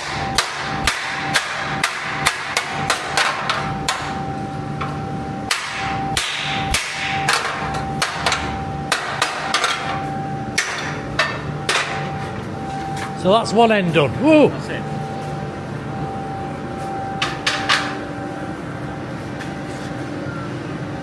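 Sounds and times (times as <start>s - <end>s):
hammer striking hot iron: 0.0s - 12.3s
steady hum: 0.0s - 21.0s.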